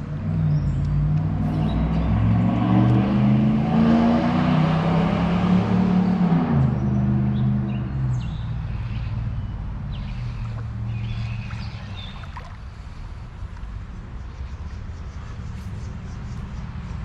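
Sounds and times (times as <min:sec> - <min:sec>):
vehicle engine passing: 0:00.2 - 0:13.8
steady low rumble: 0:08.2 - 0:17.0.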